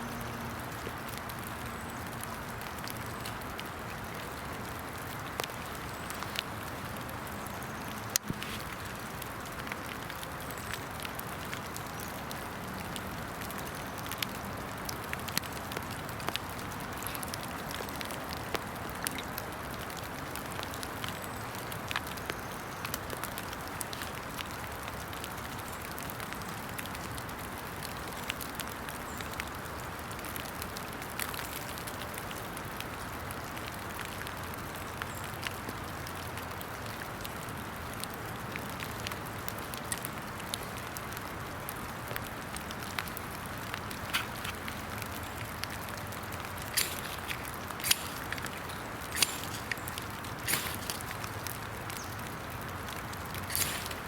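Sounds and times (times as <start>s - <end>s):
raindrops ticking: 0.0s - 54.0s
steady rain falling: 0.0s - 54.0s.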